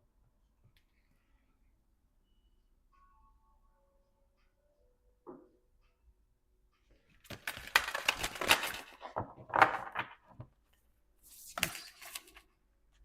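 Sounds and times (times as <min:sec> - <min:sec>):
cards being shuffled: 0:07.2 - 0:10.3, 0:11.3 - 0:12.5.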